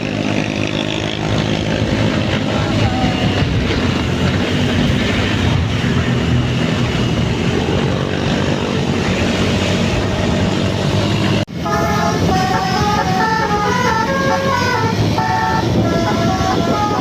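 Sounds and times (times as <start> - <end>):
bus engine drone: 0.0 - 17.0
bus horn playing a tune: 11.5 - 17.0.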